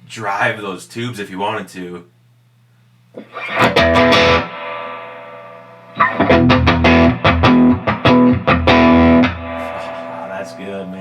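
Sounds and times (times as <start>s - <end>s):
distorted electric guitar chords: 3.2s - 11.0s.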